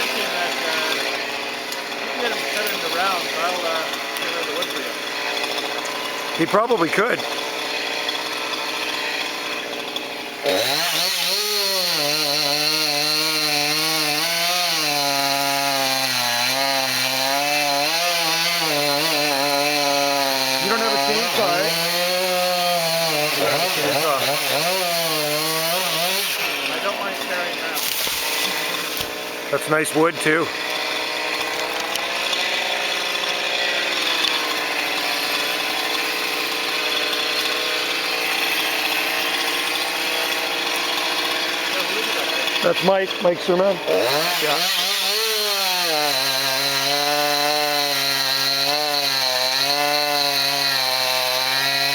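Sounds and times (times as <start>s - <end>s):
chainsaw cutting wood: 0.0s - 51.9s.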